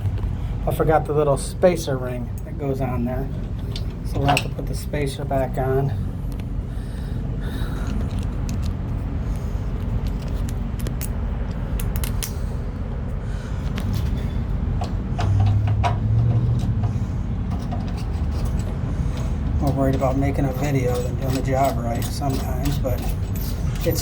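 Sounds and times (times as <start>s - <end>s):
low hum: 0.0s - 24.0s
steady low rumble: 0.0s - 24.0s
metallic clicks and taps: 10.0s - 12.4s.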